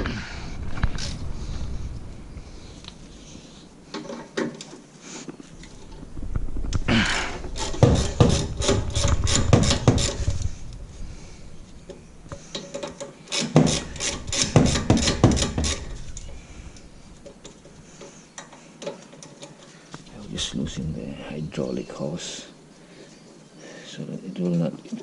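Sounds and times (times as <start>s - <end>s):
hand tools clicking and rasping: 7.3s - 10.5s, 11.9s - 19.8s.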